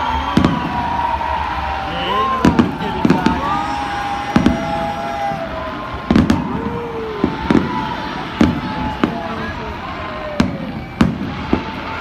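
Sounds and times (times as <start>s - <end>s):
background hubbub: 0.0s - 12.0s
fireworks bangs: 0.0s - 12.0s.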